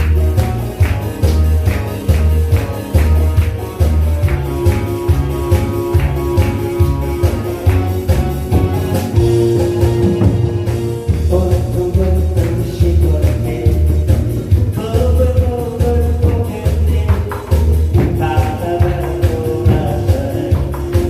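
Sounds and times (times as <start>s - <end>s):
steady drum beat: 0.0s - 21.0s
upbeat song accompaniment: 0.0s - 21.0s
person singing: 11.0s - 21.0s.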